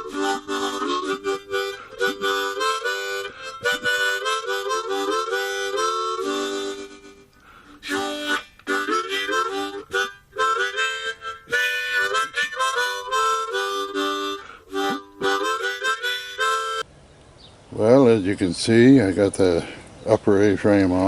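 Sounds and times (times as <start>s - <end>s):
harmonica playing a tune: 0.0s - 16.9s.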